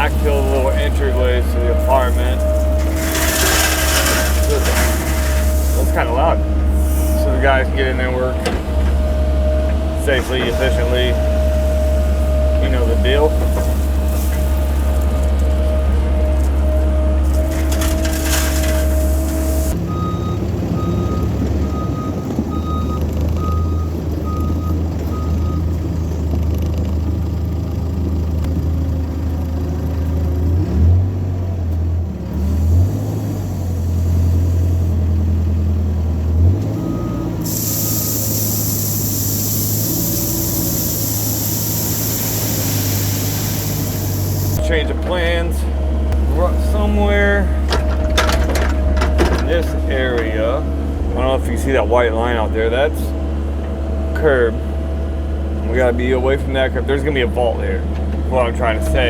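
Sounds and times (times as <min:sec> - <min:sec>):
back-up alarm beeping: 0:00.0 - 0:25.7
diesel engine running: 0:00.0 - 0:59.0
steady hiss: 0:37.5 - 0:44.6.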